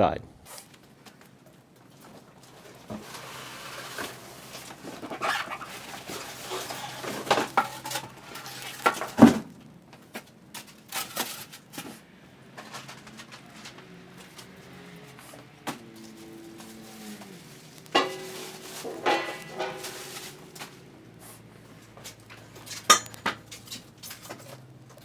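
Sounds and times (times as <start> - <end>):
metal parts clattering: 10.6 - 11.9, 15.9 - 25.0.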